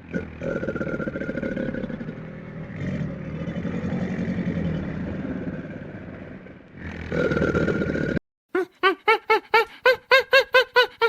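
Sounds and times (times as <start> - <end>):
large animal low rough call: 0.0 - 8.2.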